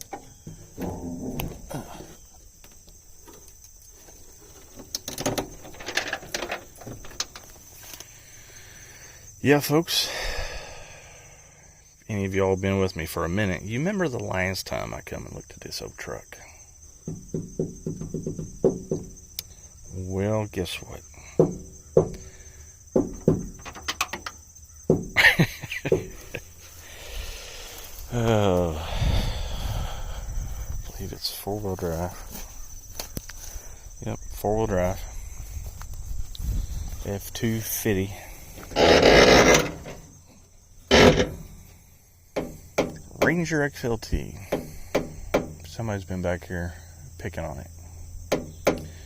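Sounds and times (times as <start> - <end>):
sharp knocks and crunches: 0.0 - 8.0, 17.0 - 19.4, 21.3 - 26.4, 34.4 - 40.2, 40.8 - 43.5, 48.3 - 49.0
insects droning: 0.0 - 49.0
footsteps crunching through dry brush: 32.0 - 33.9, 35.1 - 37.4.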